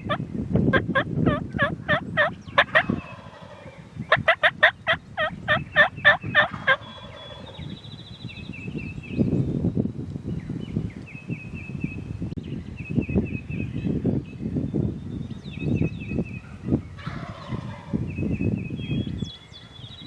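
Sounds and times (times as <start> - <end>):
songbirds chirping: 0.0 - 20.0
turkey yelping: 0.1 - 7.6.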